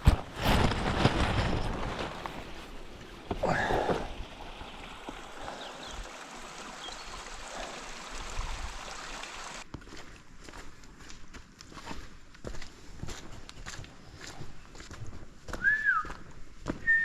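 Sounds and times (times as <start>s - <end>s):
stream water rushing: 2.1s - 9.7s.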